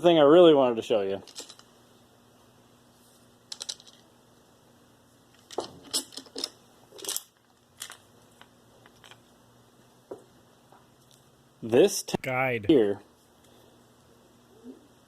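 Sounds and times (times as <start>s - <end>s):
faint steady hum: 0.0s - 15.0s
metal parts clicking and clinking: 1.3s - 1.6s, 5.3s - 8.0s.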